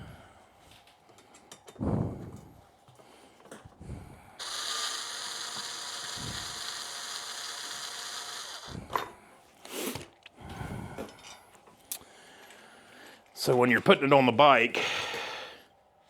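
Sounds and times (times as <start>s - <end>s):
ratchet wrench clicking: 4.4s - 8.8s.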